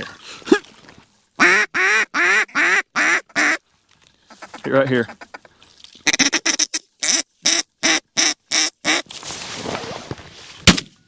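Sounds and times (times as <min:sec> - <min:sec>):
duck quacking: 0:01.4 - 0:03.6
rustling: 0:08.9 - 0:10.9.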